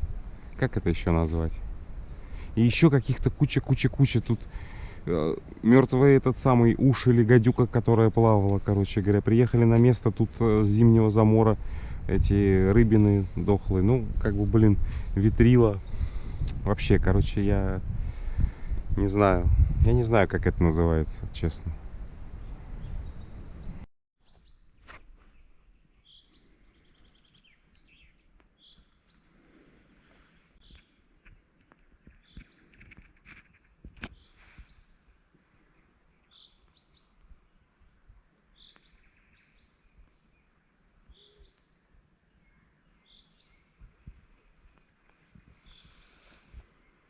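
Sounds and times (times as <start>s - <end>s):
small birds chirping: 0.0s - 17.5s, 22.4s - 29.6s, 30.5s - 47.0s
thin bird whistles: 41.1s - 41.7s, 45.6s - 46.6s
bird trill: 41.1s - 41.8s.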